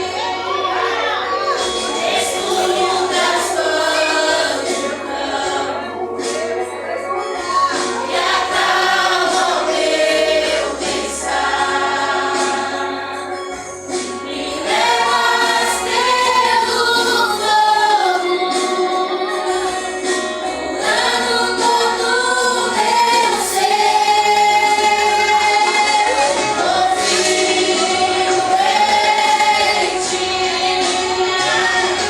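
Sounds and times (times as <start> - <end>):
vocal group singing worship song: 0.0 - 6.7, 7.7 - 32.0.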